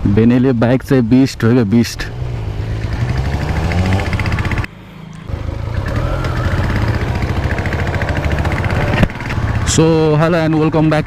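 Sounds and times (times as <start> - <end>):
motorcycle engine accelerating: 2.0 - 10.2.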